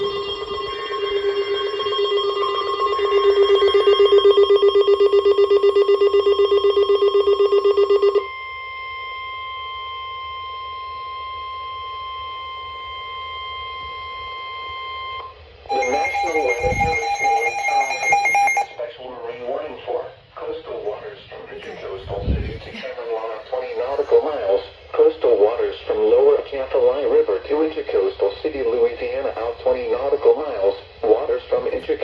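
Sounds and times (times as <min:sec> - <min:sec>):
pulsing buzzer alarm tone: 0:00.0 - 0:18.8
steady high warning tone: 0:00.0 - 0:19.1.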